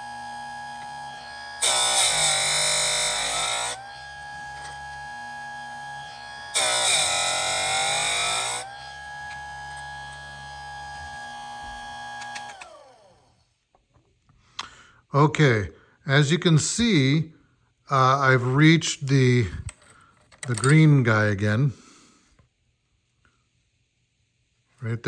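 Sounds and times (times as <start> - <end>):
grinding wheel motor whine: 0.0 - 13.4
grinding rasp on chain: 0.7 - 5.2, 6.0 - 10.4.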